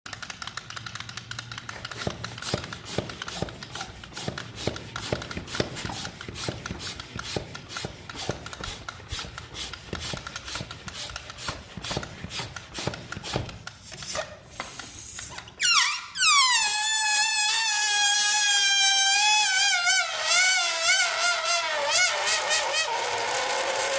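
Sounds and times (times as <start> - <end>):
air squealing from balloon neck: 12.3 - 23.9
rubber balloon rubbing squeaks: 15.2 - 23.9.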